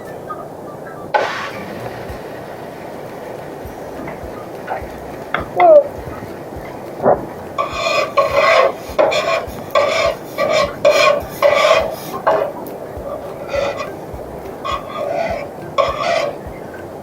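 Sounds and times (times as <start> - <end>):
rasping rubbing strokes: 3.7 - 17.0.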